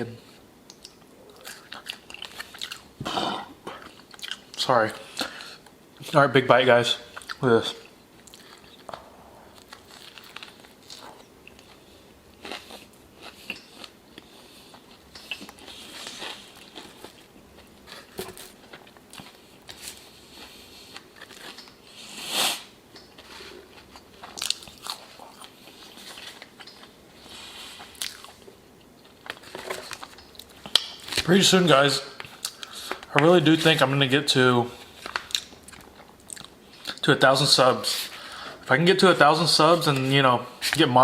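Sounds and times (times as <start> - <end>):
chewing and crunching: 0.7 - 5.8, 7.1 - 22.0, 22.9 - 31.3, 34.8 - 37.0.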